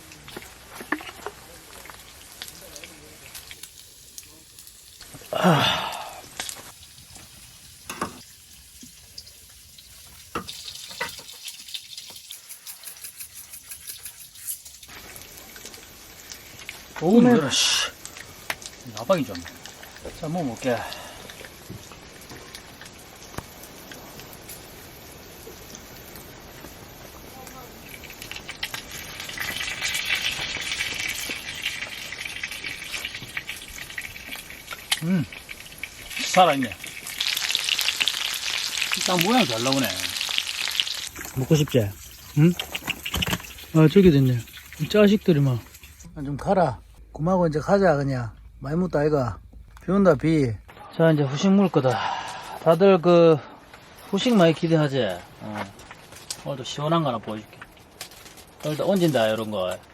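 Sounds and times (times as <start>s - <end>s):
food sizzling on a griddle: 0.0s - 46.1s, 53.8s - 59.9s
small quick crackles: 57.4s - 59.9s.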